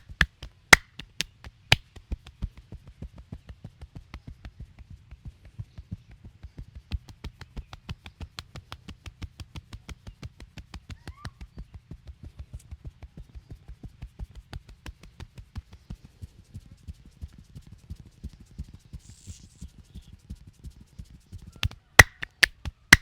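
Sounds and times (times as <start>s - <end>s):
hands slapping body: 0.0s - 1.9s, 21.6s - 23.0s.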